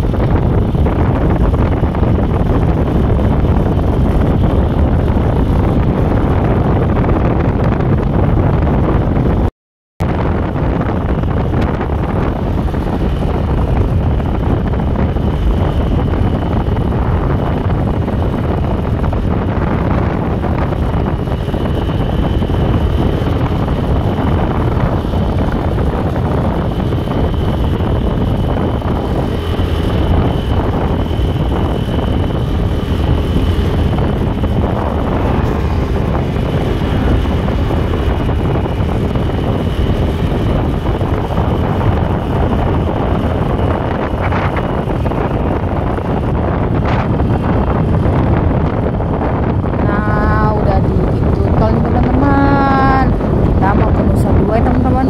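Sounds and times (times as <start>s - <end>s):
motorcycle engine and road noise: 0.0s - 55.0s
wind buffeting microphone: 0.0s - 55.0s.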